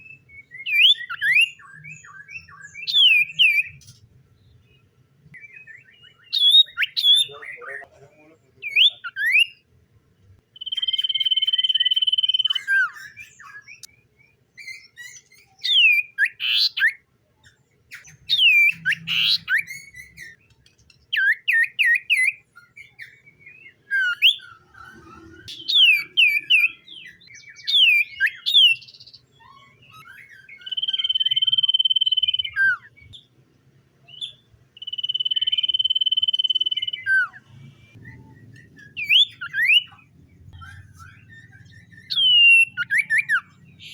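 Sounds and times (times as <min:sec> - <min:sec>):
bird singing high whistles: 0:00.0 - 0:03.8, 0:05.4 - 0:07.3, 0:10.6 - 0:14.0, 0:14.6 - 0:17.0, 0:21.2 - 0:33.2, 0:34.1 - 0:43.9
bird chirps and twitters: 0:00.0 - 0:09.7, 0:10.4 - 0:33.3, 0:34.0 - 0:43.9.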